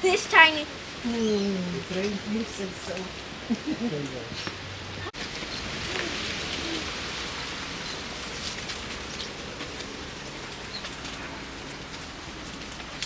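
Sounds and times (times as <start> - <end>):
rain hissing: 0.0 - 13.0.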